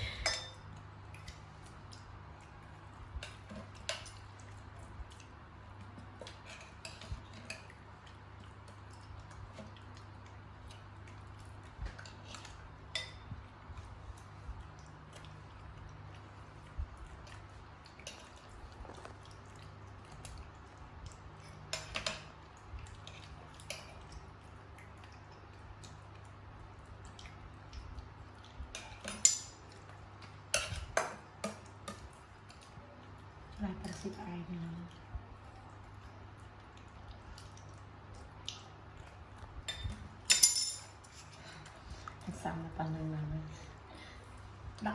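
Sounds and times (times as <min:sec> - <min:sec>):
dishes and utensils clinking: 0:00.0 - 0:00.6, 0:28.8 - 0:29.8, 0:39.7 - 0:41.4
low steady hum: 0:00.0 - 0:44.9.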